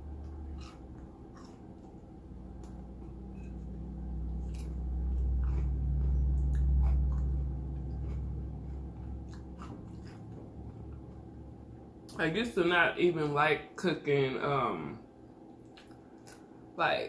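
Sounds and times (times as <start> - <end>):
chewing food: 0.0 - 12.2, 15.6 - 16.5
low rumble: 0.0 - 12.4.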